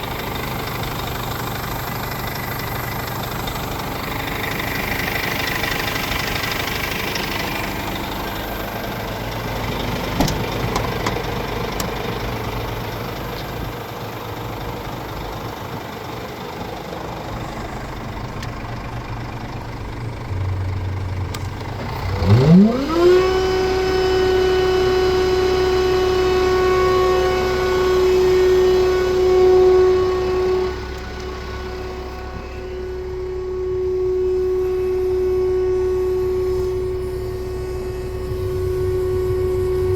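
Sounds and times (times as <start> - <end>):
diesel truck engine idling: 0.0 - 39.9
rising whine: 0.0 - 39.9.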